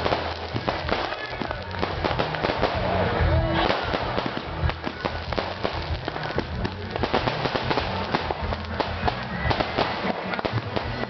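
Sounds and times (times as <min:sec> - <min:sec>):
firecrackers popping: 0:00.0 - 0:11.0
music: 0:00.0 - 0:11.0.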